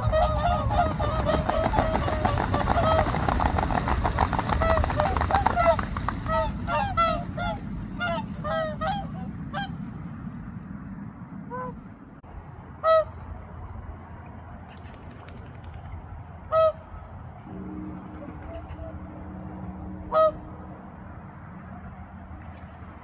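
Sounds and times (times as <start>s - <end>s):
swans honking: 0.0s - 10.3s, 11.4s - 12.0s, 12.8s - 13.3s, 16.4s - 21.8s.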